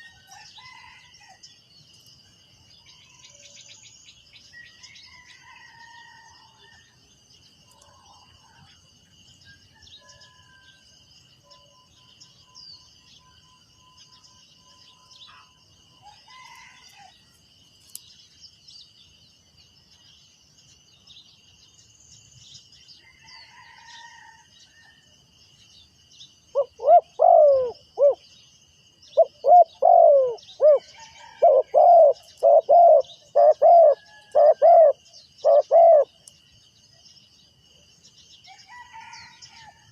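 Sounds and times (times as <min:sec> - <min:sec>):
distant bird chirps: 0:07.7 - 0:17.2, 0:26.3 - 0:37.0
dove cooing: 0:26.5 - 0:28.2, 0:29.2 - 0:36.2.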